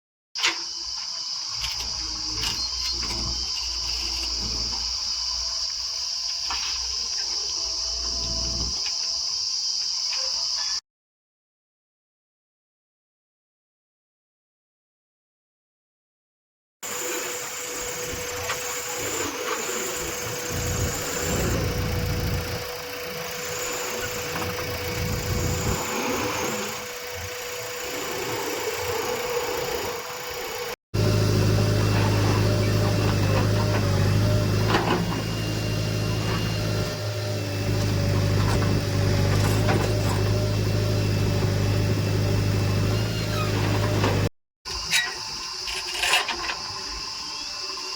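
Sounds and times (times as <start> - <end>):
diesel machinery engines running: 1.5 - 8.9, 16.8 - 44.3
close engine low hum: 17.1 - 44.3.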